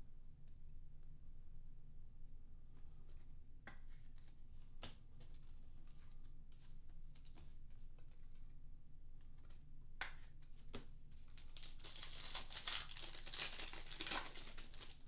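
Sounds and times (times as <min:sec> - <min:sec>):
cards clicking and rustling: 0:10.3 - 0:15.0.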